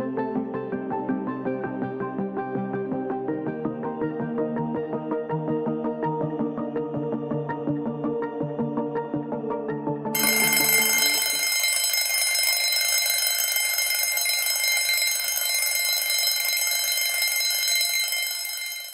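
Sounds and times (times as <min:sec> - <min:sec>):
background music: 0:00.0 - 0:11.6
alarm clock ringing: 0:10.2 - 0:18.9.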